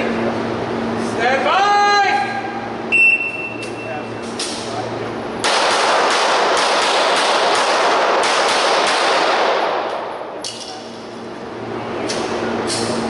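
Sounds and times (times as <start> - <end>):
pistol shots with echo: 5.4 - 10.6.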